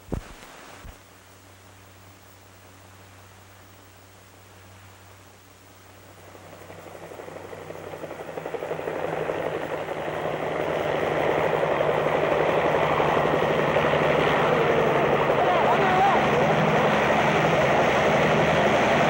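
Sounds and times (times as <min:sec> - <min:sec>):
engine running: 0:06.1 - 0:19.0.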